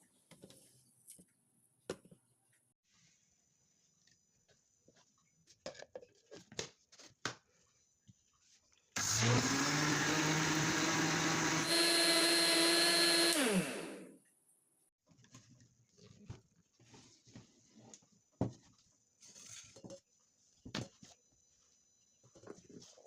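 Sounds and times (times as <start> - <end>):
blender motor running: 9.0 - 14.1.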